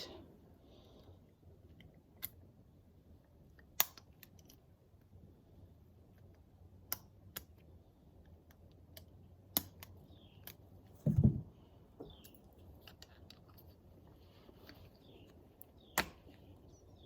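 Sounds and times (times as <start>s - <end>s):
dull thump: 11.0s - 11.6s.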